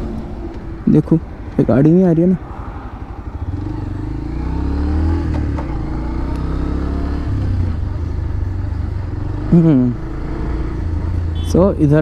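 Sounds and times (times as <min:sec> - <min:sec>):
motorcycle engine pulling away: 0:02.8 - 0:11.4.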